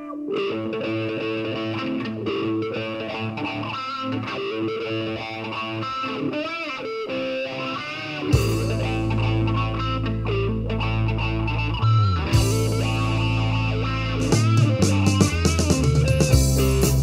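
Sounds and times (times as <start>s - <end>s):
electric guitar with pitch bends: 0.0s - 17.0s
distorted chord with heavy bass: 8.4s - 17.0s.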